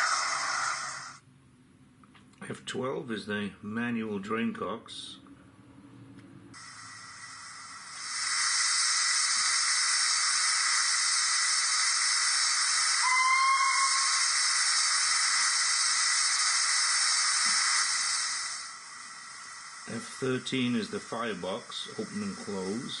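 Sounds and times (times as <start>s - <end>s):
steam hissing: 0.0s - 1.2s, 6.6s - 23.0s
short rising whistle-like tone: 13.0s - 14.8s.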